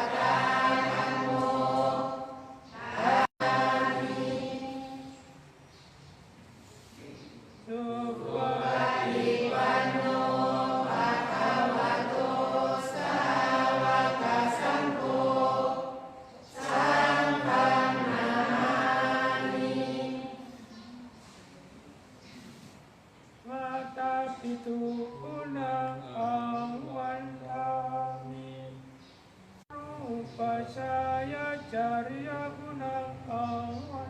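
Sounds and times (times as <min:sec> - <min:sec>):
group chanting in unison: 0:00.0 - 0:05.4, 0:07.8 - 0:20.7.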